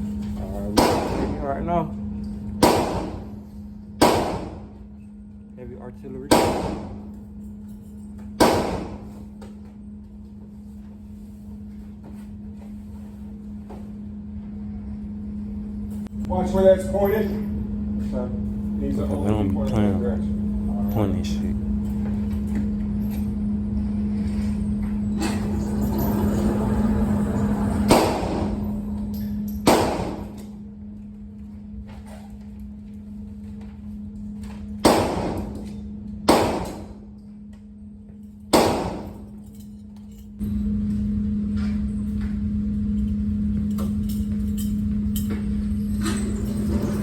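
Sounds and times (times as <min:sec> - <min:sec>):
steady low hum: 0:00.0 - 0:47.0
gunshots with echo: 0:00.8 - 0:01.4, 0:02.6 - 0:03.3, 0:04.0 - 0:04.7, 0:06.3 - 0:07.1, 0:08.4 - 0:09.2, 0:27.9 - 0:28.6, 0:29.7 - 0:30.4.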